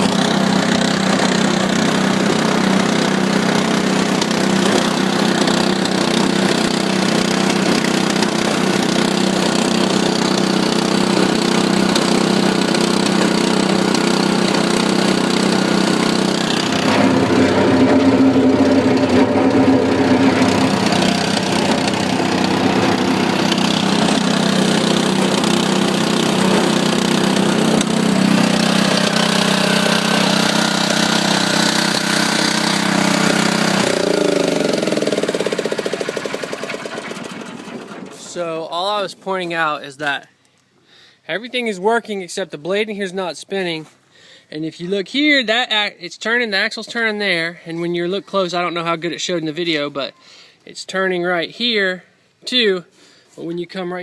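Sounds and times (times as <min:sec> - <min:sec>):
gasoline engine running: 0:00.0 - 0:38.5.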